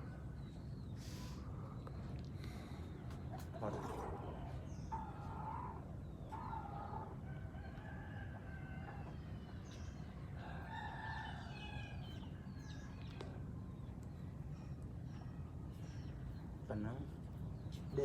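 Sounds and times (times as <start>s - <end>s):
rooster crowing: 10.4s - 12.3s.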